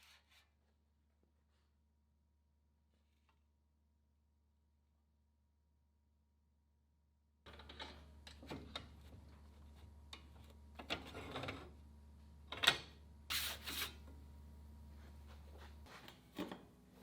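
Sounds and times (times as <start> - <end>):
scraping on sheet steel: 13.3 - 14.0.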